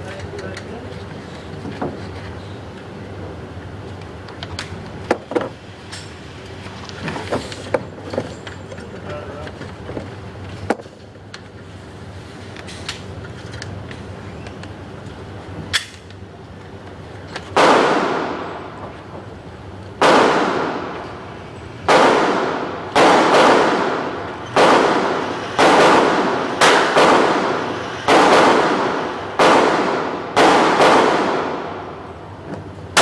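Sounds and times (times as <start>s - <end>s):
gunshots echoing: 17.6s - 18.8s, 20.0s - 21.1s, 21.8s - 32.1s.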